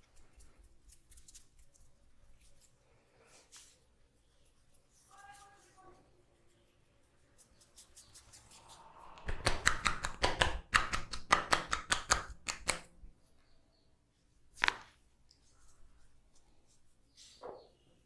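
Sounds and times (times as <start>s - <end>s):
hands slapping in massage: 9.2s - 13.0s, 14.6s - 15.0s.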